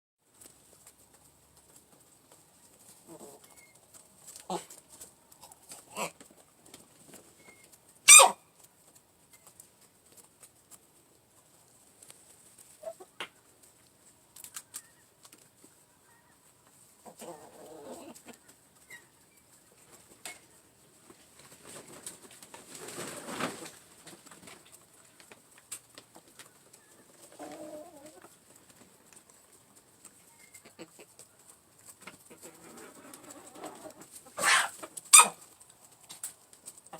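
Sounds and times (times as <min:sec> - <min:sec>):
hens clucking softly: 0:12.6 - 0:13.4, 0:14.6 - 0:20.6, 0:26.0 - 0:36.0.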